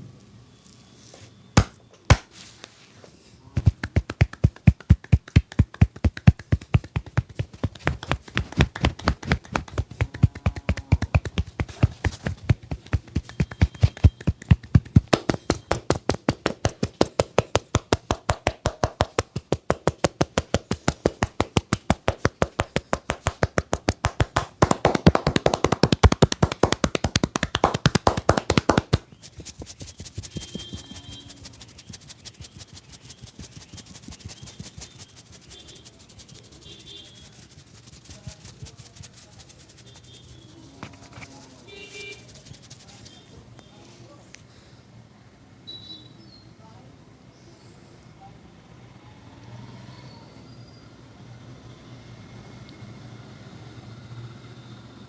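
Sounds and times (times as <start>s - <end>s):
hands tapping in percussive massage: 1.6s - 2.3s, 3.6s - 41.3s, 42.1s - 43.2s.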